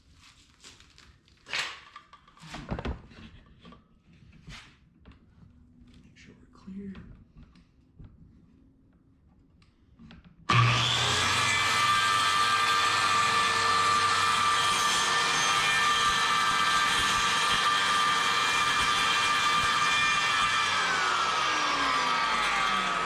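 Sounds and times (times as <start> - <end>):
electric power saw motor whine: 10.5 - 23.0.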